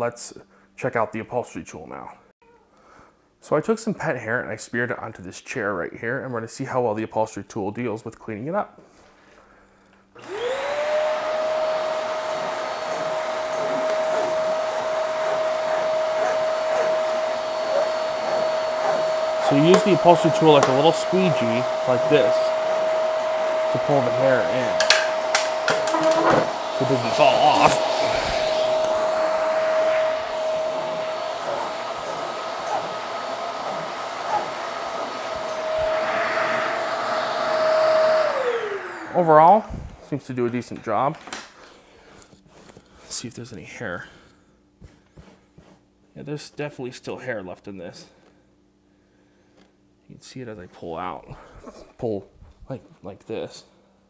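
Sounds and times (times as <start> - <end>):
vacuum cleaner motor whine: 10.2 - 40.0
suction air rushing: 11.7 - 39.9.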